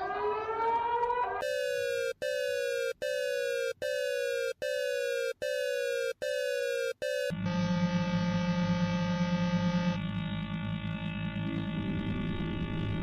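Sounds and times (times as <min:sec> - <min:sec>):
electronic alert alarm tone: 0:01.4 - 0:10.0.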